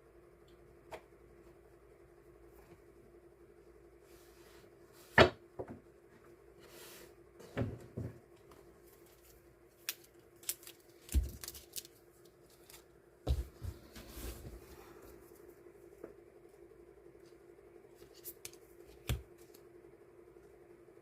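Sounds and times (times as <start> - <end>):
steady low hum: 0.0 - 21.0
stickers and packaging handled: 8.5 - 14.0.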